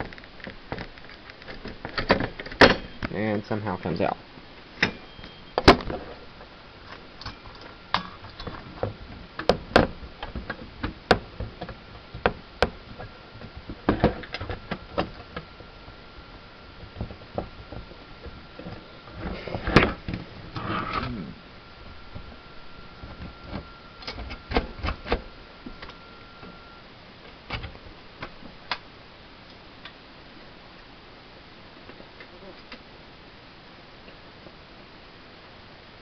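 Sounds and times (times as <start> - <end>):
scraping and rustling: 12.9 - 21.3.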